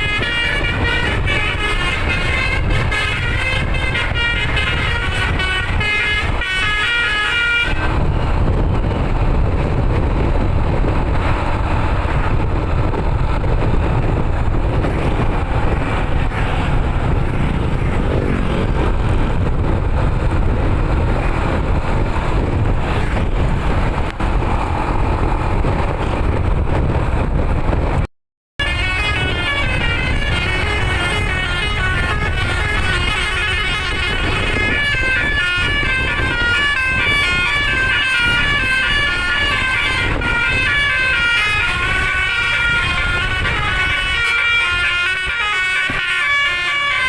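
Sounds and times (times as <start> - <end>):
bus horn melody: 0.0 - 8.3, 28.6 - 47.0
bus engine and road rumble: 0.0 - 47.0.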